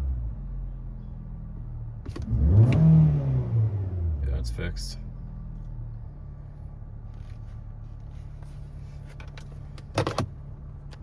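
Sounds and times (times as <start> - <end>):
car engine idling: 4.0 - 11.0.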